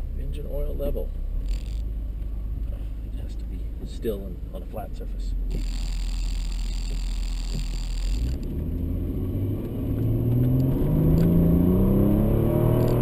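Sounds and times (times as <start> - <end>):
car engine accelerating: 5.3 - 13.0.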